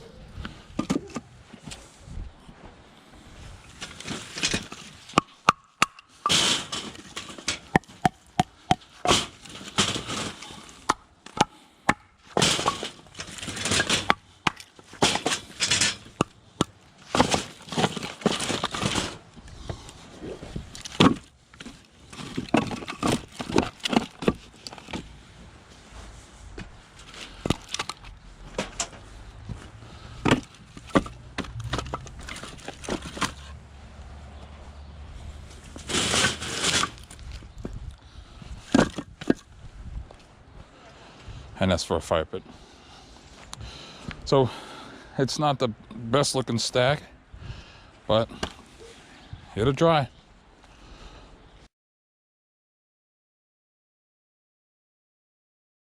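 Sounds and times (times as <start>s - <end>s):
wood scraping and rustling: 0.1s - 5.5s, 6.1s - 41.4s
firewood pieces clattering: 3.7s - 25.2s, 27.0s - 29.2s, 29.9s - 33.6s, 35.6s - 39.5s.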